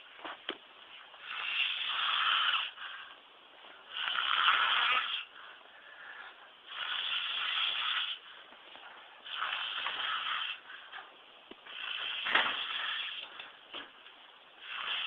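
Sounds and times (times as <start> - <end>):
man snoring: 3.9 - 5.3
faint breathing: 5.2 - 13.8.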